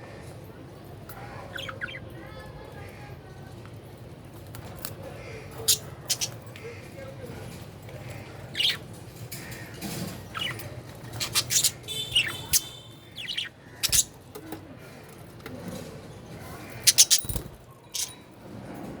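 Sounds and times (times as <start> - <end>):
budgerigar chirping: 5.7 - 6.4, 11.2 - 14.1, 16.9 - 17.4.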